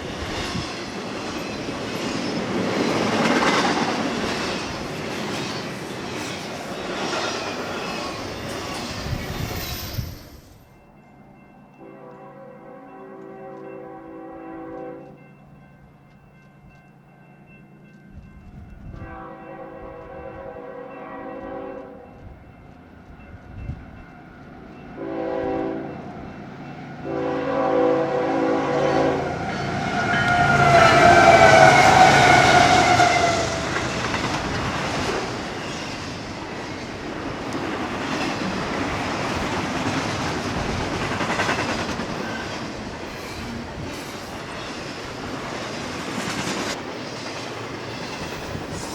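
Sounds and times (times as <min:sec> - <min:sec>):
train wheels rumbling on rail: 0:00.0 - 0:10.8, 0:17.8 - 0:48.9
locomotive air horn blasts: 0:11.8 - 0:15.2, 0:19.0 - 0:22.0, 0:25.0 - 0:26.0, 0:27.0 - 0:33.8.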